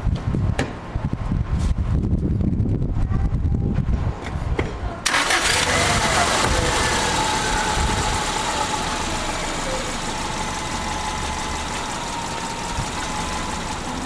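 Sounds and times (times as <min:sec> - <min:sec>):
car engine idling: 0:05.1 - 0:14.0.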